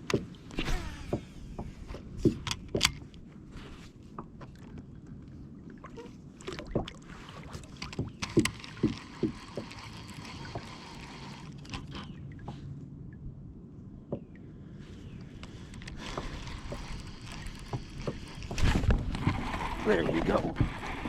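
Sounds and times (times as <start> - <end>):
water lapping at hull: 0.0 - 13.4, 14.0 - 21.0
low steady rumble: 0.0 - 21.0
knocks and clicks on kayak: 1.0 - 3.2, 7.6 - 12.2.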